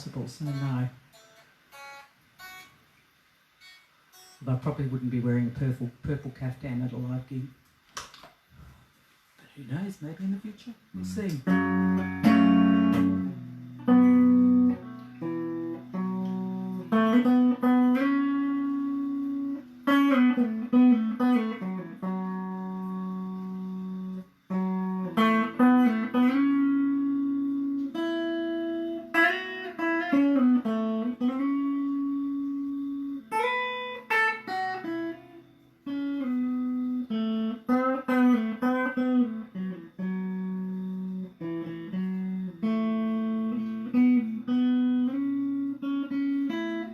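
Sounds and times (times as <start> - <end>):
instrumental guitar music: 0.0 - 8.7, 10.9 - 46.9.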